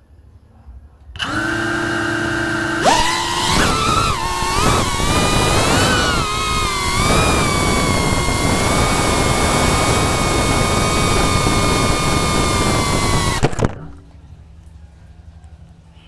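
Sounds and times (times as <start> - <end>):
clicks: 1.2 - 14.1
drone motors whining: 1.2 - 14.1.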